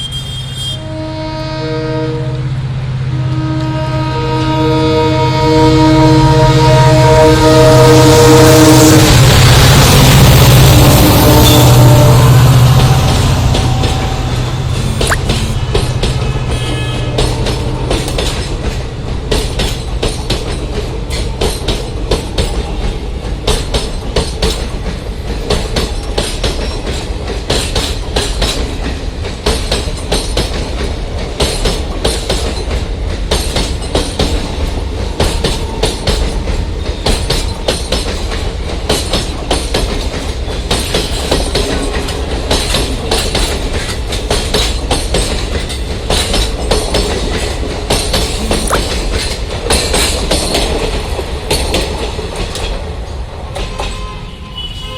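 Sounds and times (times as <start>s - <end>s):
train rumble: 0.0s - 54.8s
wheels clattering over rail joints: 17.2s - 54.0s.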